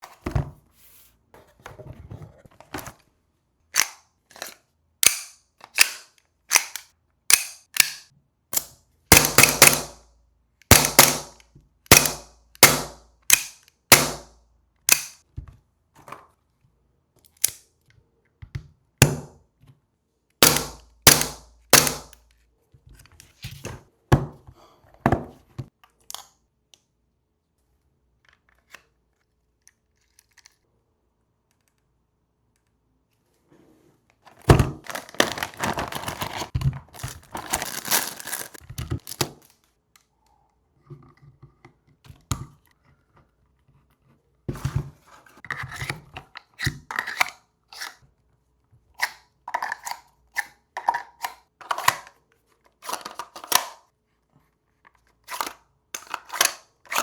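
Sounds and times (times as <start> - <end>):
pistol and holster snapping: 5.0 - 8.0, 10.7 - 14.3, 14.9 - 15.2, 20.4 - 22.2.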